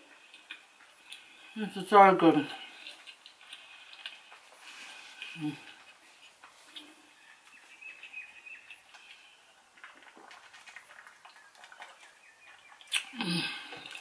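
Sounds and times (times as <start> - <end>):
soft chewing: 0.1 - 1.6, 2.4 - 14.0.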